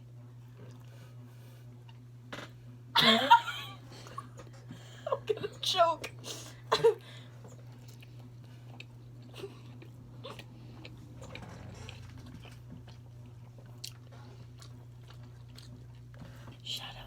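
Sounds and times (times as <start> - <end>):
steady low hum: 0.0 - 17.0
soft chewing: 0.3 - 2.1, 7.2 - 17.0.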